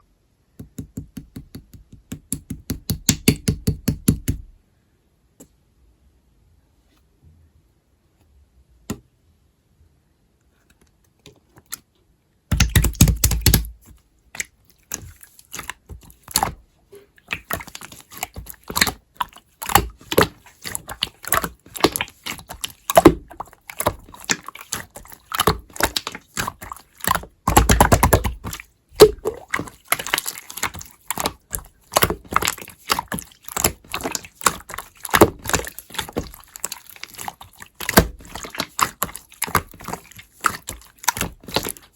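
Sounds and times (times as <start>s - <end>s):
slime squished by hand: 12.5s - 16.6s, 17.2s - 41.9s.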